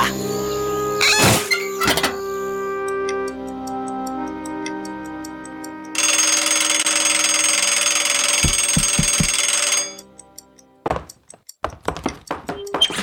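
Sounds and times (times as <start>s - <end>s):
loud bell ringing: 6.0s - 10.0s
knock: 8.4s - 9.4s.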